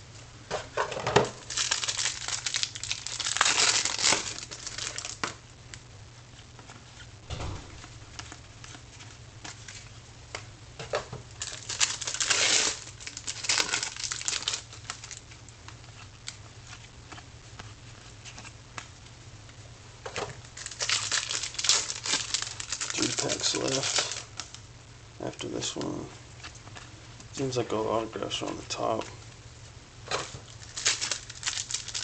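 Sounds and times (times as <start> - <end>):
wrapper crinkling and tearing: 1.4 - 5.4, 11.4 - 16.8, 20.4 - 24.6, 30.1 - 32.0.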